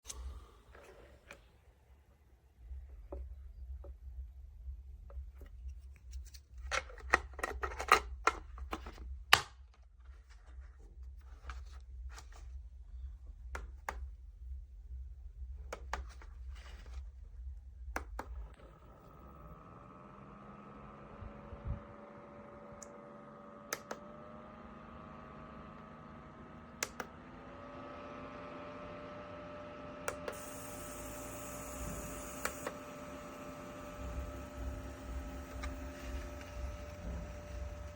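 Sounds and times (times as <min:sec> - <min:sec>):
small fan humming: 0:11.9 - 0:37.9.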